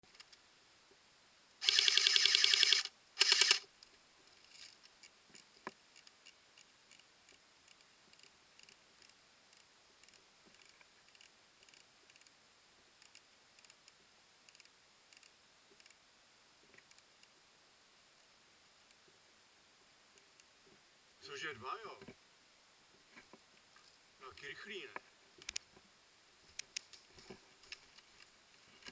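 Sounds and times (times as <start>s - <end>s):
airsoft gun full-auto bursts: 1.6s - 3.7s
faint ticks: 3.4s - 12.4s, 13.0s - 16.0s, 16.6s - 17.4s, 18.2s - 19.2s, 19.8s - 20.8s, 22.9s - 25.9s, 26.5s - 28.9s.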